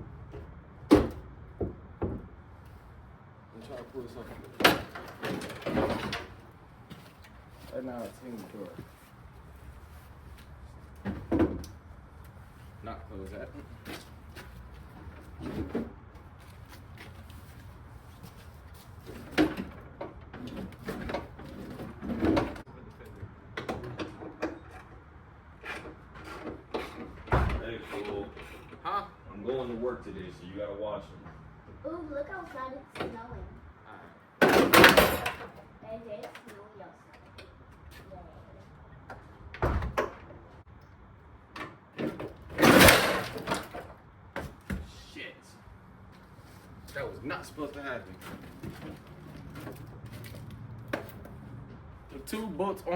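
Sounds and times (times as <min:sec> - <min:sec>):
knocks and clunks on car parts: 0:00.3 - 0:02.5, 0:11.0 - 0:11.7.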